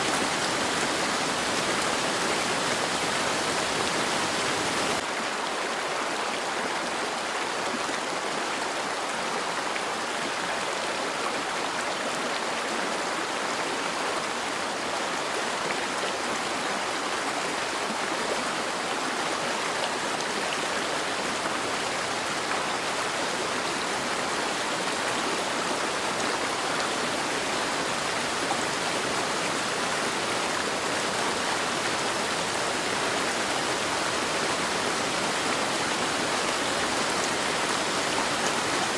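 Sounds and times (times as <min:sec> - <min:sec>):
heavy rain hissing: 0:00.0 - 0:05.0.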